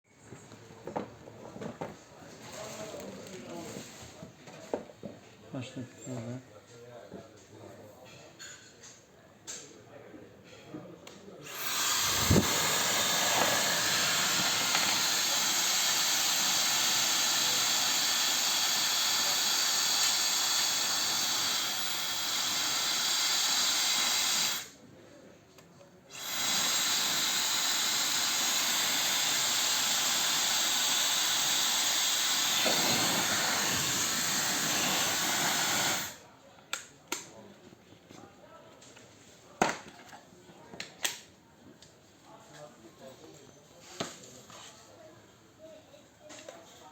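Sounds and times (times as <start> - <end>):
hair dryer blowing: 11.4 - 24.7, 26.1 - 36.2.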